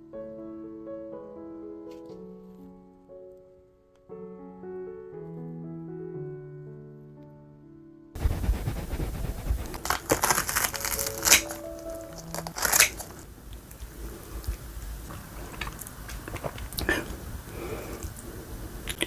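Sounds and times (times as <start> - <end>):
food crunching: 8.5 - 13.8.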